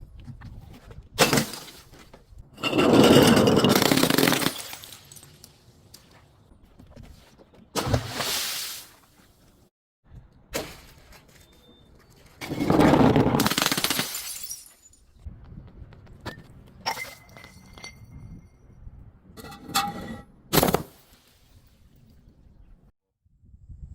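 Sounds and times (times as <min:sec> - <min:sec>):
glass bottles smashing: 0:02.8 - 0:05.5, 0:12.5 - 0:15.1.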